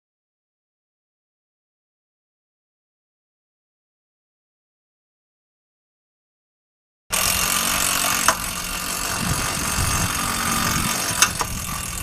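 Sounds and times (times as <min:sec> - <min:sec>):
sharp clicks: 0:10.9 - 0:11.6.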